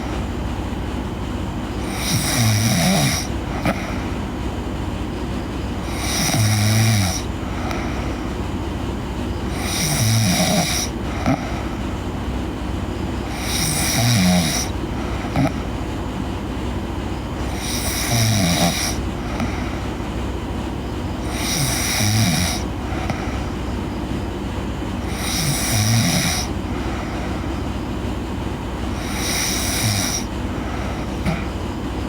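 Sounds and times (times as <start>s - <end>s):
girl snoring: 1.8s - 4.0s, 5.8s - 8.1s, 9.5s - 11.7s, 13.2s - 15.7s, 17.4s - 19.8s, 21.2s - 23.5s, 25.0s - 27.4s, 28.9s - 31.6s.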